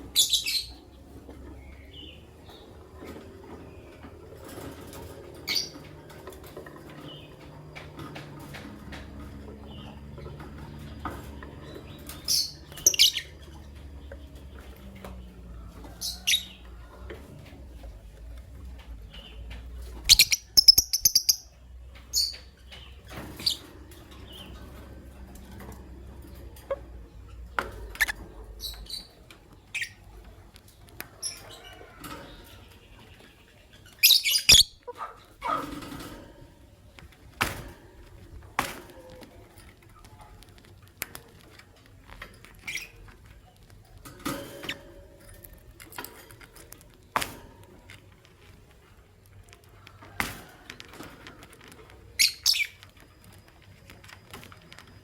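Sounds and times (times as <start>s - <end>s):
birds chirping high-pitched: 0.0s - 36.0s, 41.8s - 43.8s, 52.0s - 55.0s.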